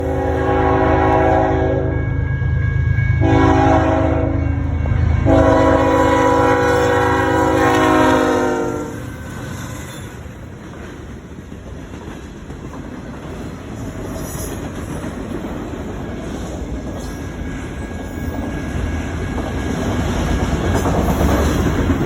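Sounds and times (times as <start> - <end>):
locomotive air horn blasts: 0.0 - 9.5
low rumble of train: 0.0 - 22.0.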